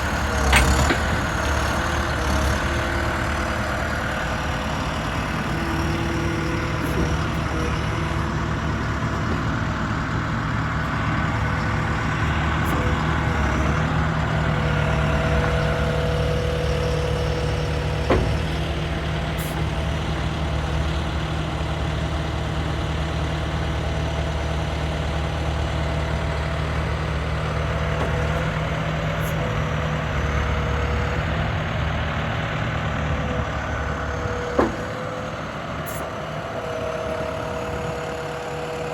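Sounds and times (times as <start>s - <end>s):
diesel engine running: 0.0s - 38.9s
sharp clunk: 0.3s - 1.2s, 18.0s - 18.6s, 34.5s - 35.0s.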